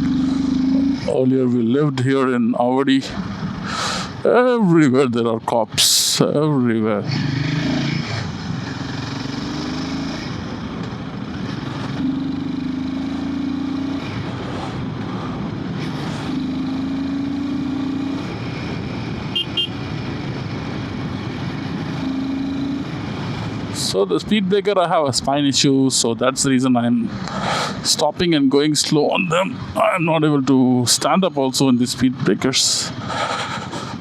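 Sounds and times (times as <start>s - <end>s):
wind and road noise: 0.0s - 34.0s
horn double beep: 19.3s - 19.8s.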